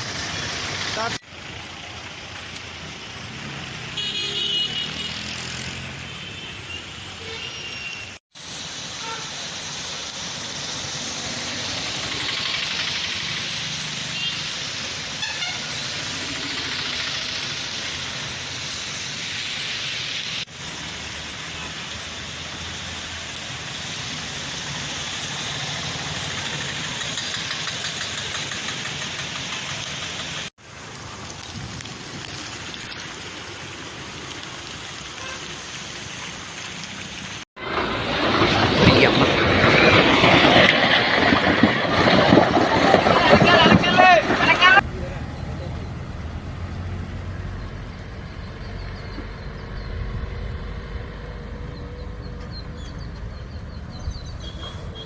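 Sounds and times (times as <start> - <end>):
street traffic hiss: 0.0 - 55.0
vehicle horn honking: 4.0 - 5.3, 6.1 - 8.2, 15.2 - 15.8.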